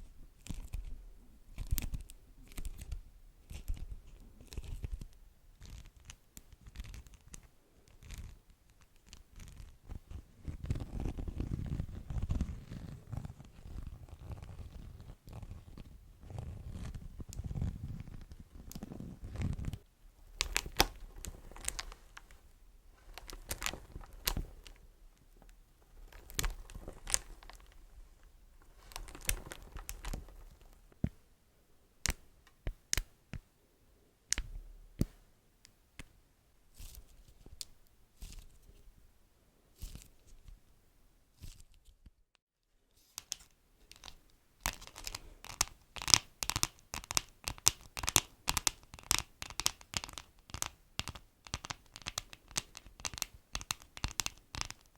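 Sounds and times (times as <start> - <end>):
beeswax wrap crinkling: 0.0 - 31.0, 43.0 - 54.9.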